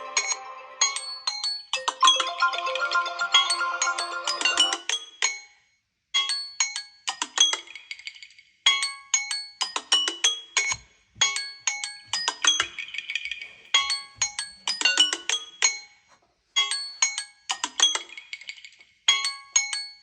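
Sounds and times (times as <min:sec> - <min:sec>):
smartphone ringtone melody: 0:00.0 - 0:04.9.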